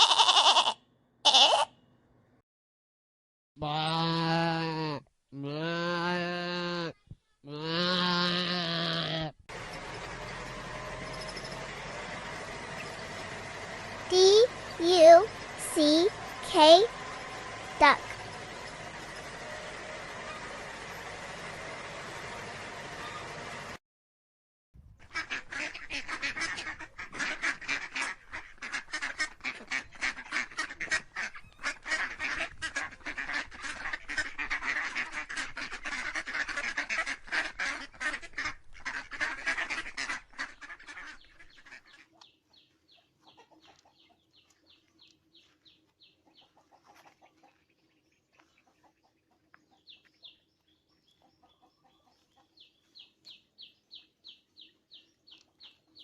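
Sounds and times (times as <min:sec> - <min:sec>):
ducks quacking: 0:09.5 - 0:21.4, 0:25.0 - 0:42.2.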